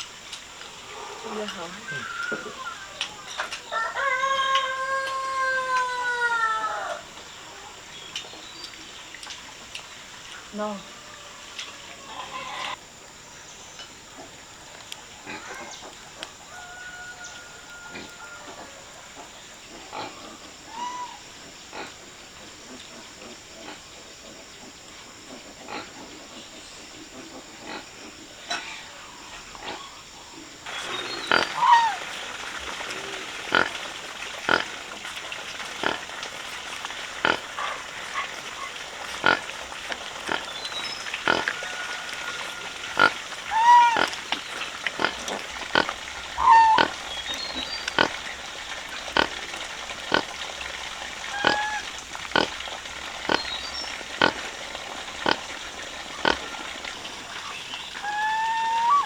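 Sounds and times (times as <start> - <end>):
pigs grunting and calling: 30.7 - 57.4.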